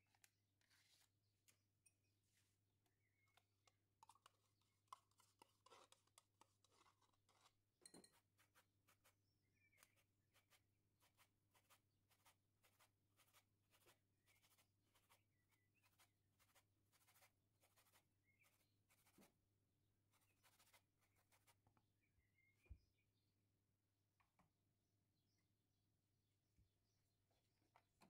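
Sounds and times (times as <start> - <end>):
utensil scraping in a bowl: 4.0 - 19.4.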